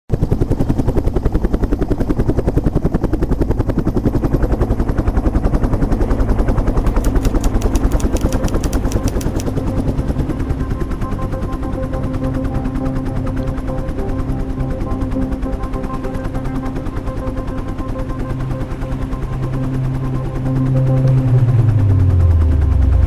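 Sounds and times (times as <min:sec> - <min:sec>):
helicopter rotor chopping: 0:00.1 - 0:23.0
rapid sharp cracks: 0:06.9 - 0:09.6.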